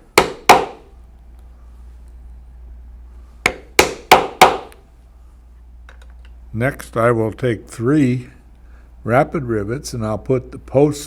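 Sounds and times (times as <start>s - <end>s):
drive punch striking leather: 0.0s - 0.8s, 3.4s - 4.7s.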